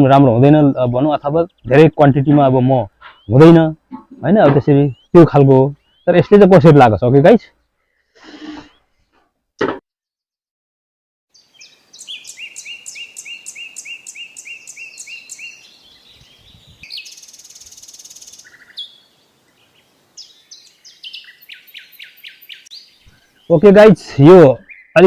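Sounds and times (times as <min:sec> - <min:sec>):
songbird chirping: 0:00.0 - 0:09.2, 0:11.3 - 0:25.0
high buzzy bird trill: 0:04.6 - 0:06.6, 0:11.4 - 0:23.7.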